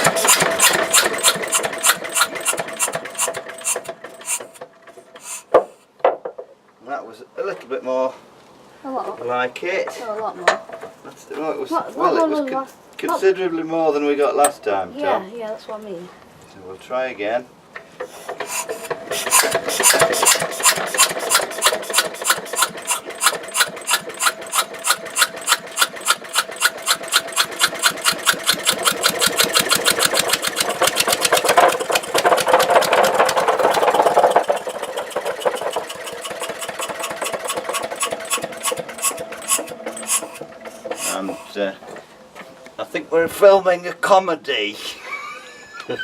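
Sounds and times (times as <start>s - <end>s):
stationary engine running: 0.0s - 4.6s, 5.2s - 5.5s, 18.3s - 41.6s.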